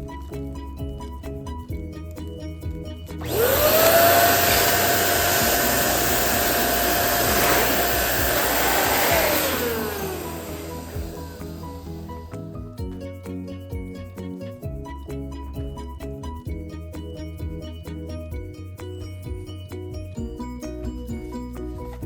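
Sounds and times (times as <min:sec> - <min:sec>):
light background music: 0:00.0 - 0:22.0
balloon inflator motor whine: 0:03.2 - 0:12.2.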